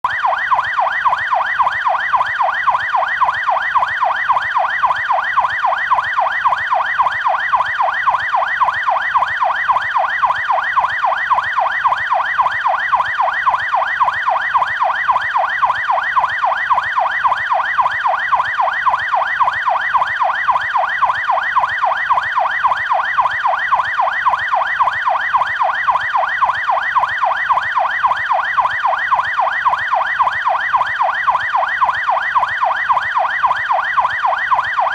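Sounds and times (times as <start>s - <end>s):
police siren yelping: 0.0s - 34.9s.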